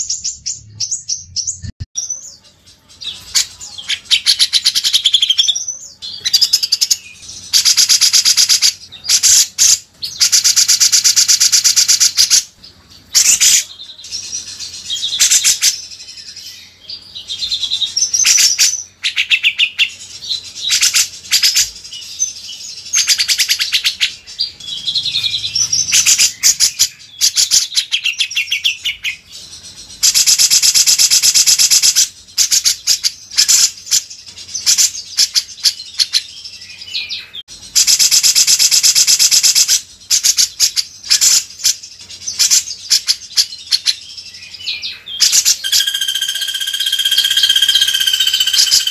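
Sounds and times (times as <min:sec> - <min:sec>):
fast rattling bird trills: 0:06.1 - 0:12.5, 0:45.2 - 0:48.9
whistled bird phrases: 0:42.3 - 0:48.9.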